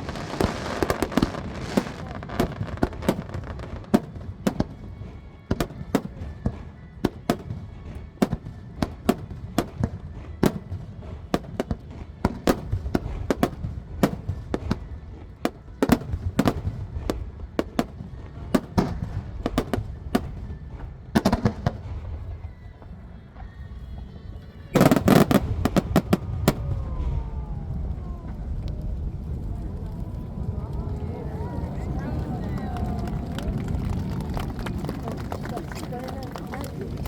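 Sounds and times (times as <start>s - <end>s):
fireworks bursting with sharp bangs: 0.0s - 30.8s, 31.4s - 37.0s
continuous low rumble: 0.0s - 37.0s.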